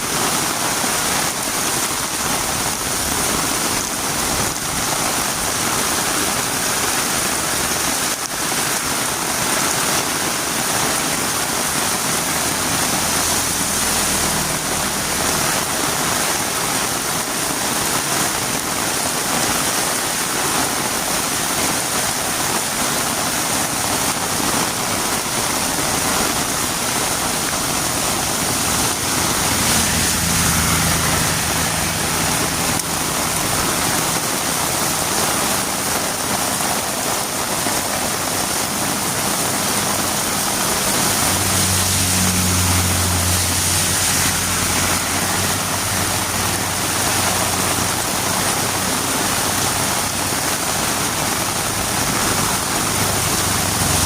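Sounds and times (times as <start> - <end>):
heavy rain falling: 0.0 - 54.0
low engine hum: 11.7 - 17.0, 24.4 - 36.8, 38.1 - 54.0.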